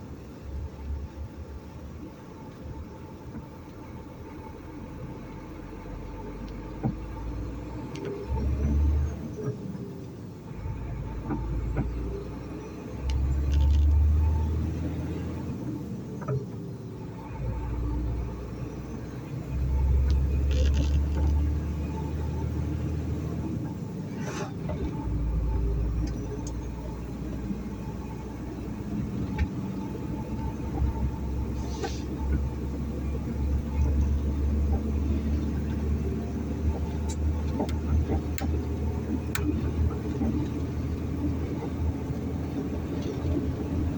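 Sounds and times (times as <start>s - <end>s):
truck rumbling: 0.0s - 43.9s
brief hisses: 24.1s - 24.6s.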